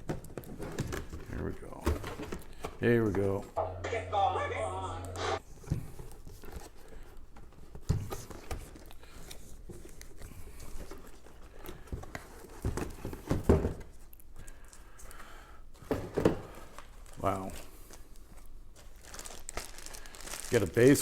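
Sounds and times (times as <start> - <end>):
plastic crinkling and rustling: 16.5 - 21.0.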